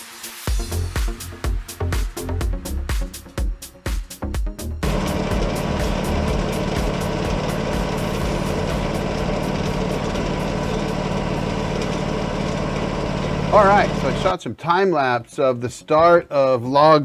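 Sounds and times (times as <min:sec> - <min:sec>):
sawmill engine running: 0:04.8 - 0:14.4.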